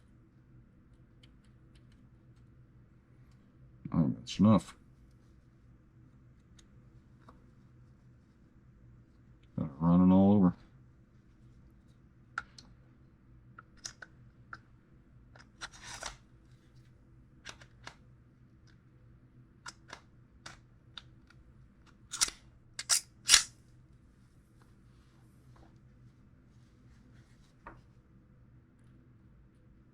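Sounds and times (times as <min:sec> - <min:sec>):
pistol parts clicking: 0:22.1 - 0:23.5.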